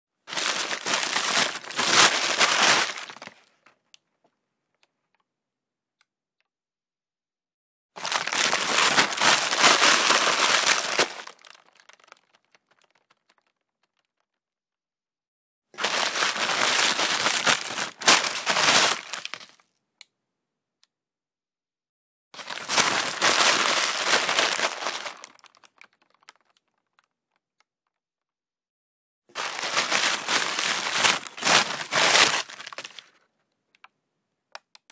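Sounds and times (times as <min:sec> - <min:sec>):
paper bag rustling and crinkling: 0:00.3 - 0:03.5, 0:08.0 - 0:13.4, 0:15.8 - 0:19.6, 0:22.4 - 0:26.5, 0:29.3 - 0:33.2.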